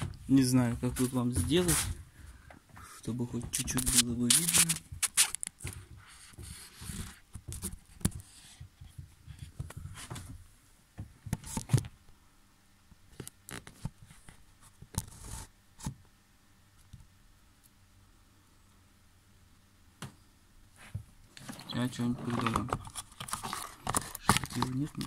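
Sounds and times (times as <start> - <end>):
rustling: 20.8 - 25.0.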